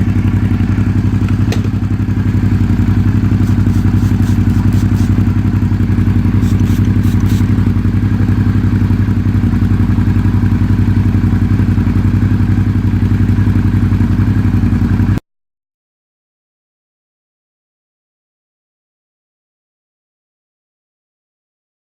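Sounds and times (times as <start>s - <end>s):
motorcycle engine idling: 0.0s - 15.2s.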